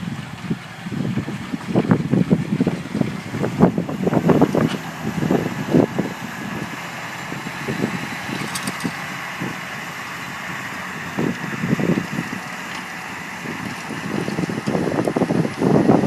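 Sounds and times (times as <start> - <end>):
tractor engine running: 0.0 - 16.0
wind buffeting microphone: 0.0 - 16.0.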